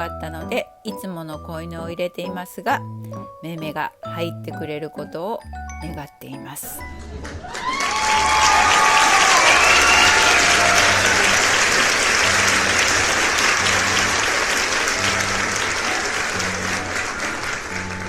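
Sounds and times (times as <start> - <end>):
applause: 7.0 - 18.0.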